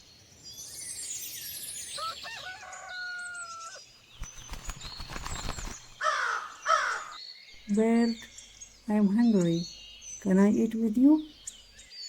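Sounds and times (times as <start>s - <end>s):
rooster crow: 2.0s - 3.8s, 6.0s - 7.2s
rustling fluttering noise: 4.1s - 7.1s
loud falling calls: 6.0s - 7.2s.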